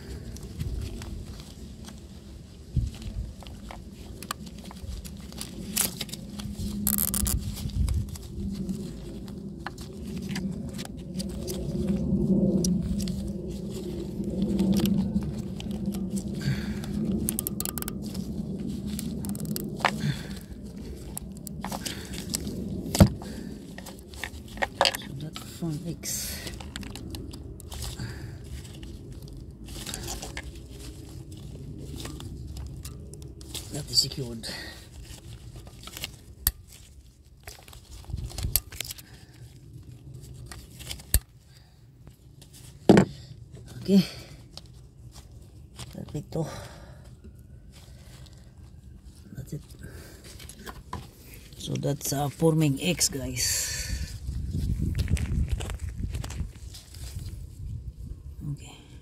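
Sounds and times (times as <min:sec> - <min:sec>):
hands rustling and scraping: 0:00.0 - 0:58.6
low hum: 0:00.0 - 0:59.0
hands clicking connector: 0:17.3 - 0:17.9.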